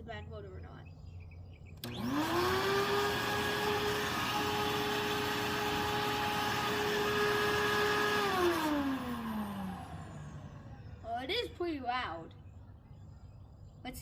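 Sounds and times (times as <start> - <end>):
vacuum cleaner motor whining: 1.8 - 11.0.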